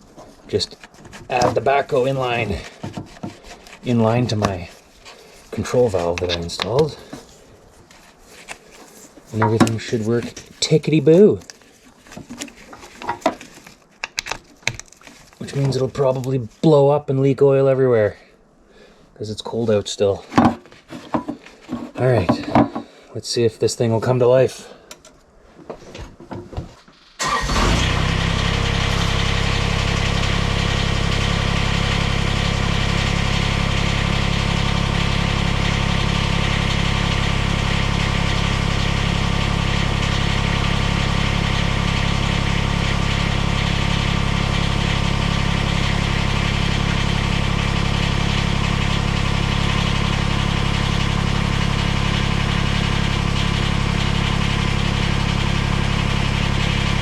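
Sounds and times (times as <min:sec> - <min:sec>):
diesel tractor engine starting: 0:27.1 - 0:57.0.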